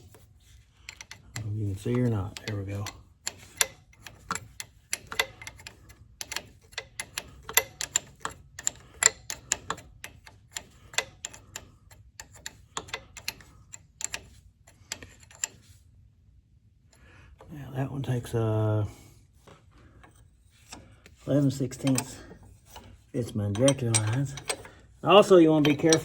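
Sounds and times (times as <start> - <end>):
wrench clicking on metal nut: 0.9 - 15.6, 21.7 - 22.9, 23.5 - 24.8, 25.6 - 26.0.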